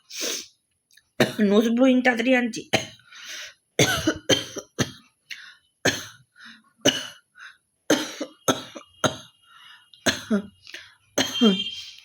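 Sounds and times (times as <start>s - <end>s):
woman coughing hard: 1.2s - 1.5s, 2.8s - 3.0s, 3.8s - 5.0s, 5.9s - 6.2s, 6.8s - 7.2s, 7.9s - 9.3s, 10.1s - 10.5s, 11.2s - 11.7s.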